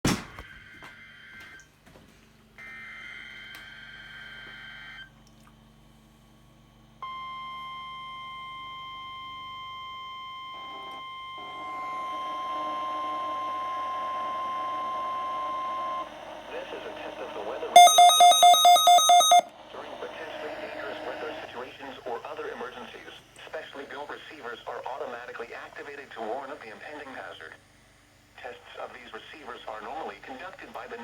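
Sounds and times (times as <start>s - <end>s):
warbling two-tone digital data burst: 17.8s - 19.4s
steady warning alarm tone: 17.8s - 19.5s.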